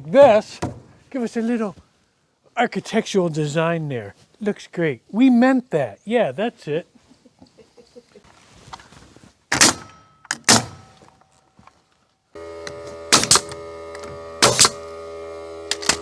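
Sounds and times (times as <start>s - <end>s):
nails driven into wood: 0.6s - 1.0s, 9.5s - 11.1s, 12.6s - 14.9s, 15.7s - 16.0s
steady motor hum: 12.4s - 16.0s.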